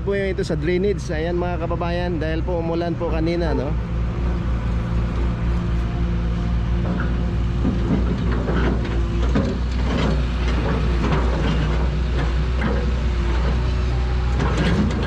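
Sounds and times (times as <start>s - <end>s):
excavator engines running: 0.0s - 15.0s
digging knocks and scrapes: 6.8s - 15.0s.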